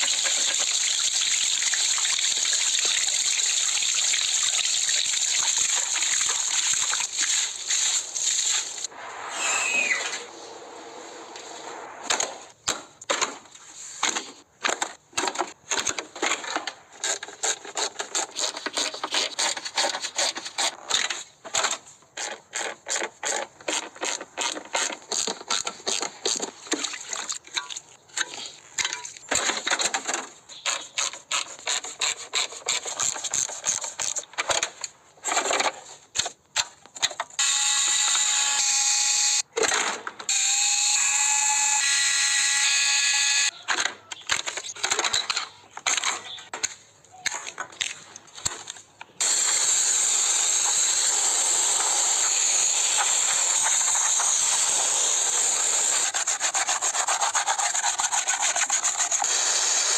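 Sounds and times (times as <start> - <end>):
tools clicking and scraping: 43.5 - 49.2.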